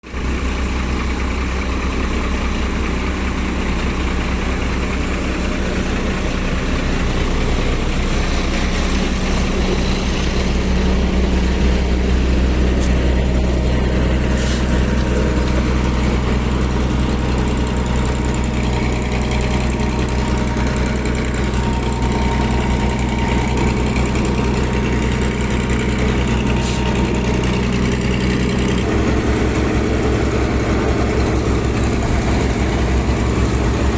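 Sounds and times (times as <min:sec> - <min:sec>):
heavy machinery engine running: 0:00.0 - 0:33.9.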